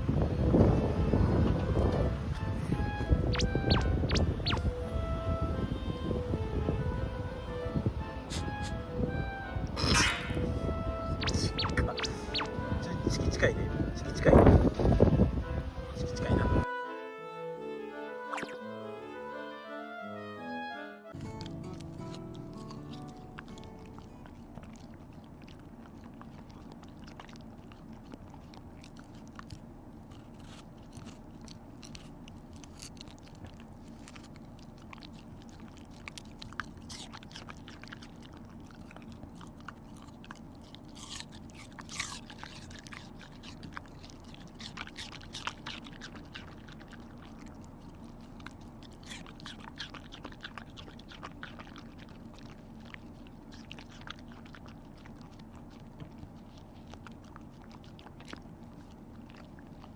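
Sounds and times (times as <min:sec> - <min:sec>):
dog crunching pear: 0:00.0 - 0:04.8, 0:09.6 - 0:15.2, 0:18.4 - 0:18.6, 0:21.1 - 0:59.9
low hum: 0:00.0 - 0:16.6.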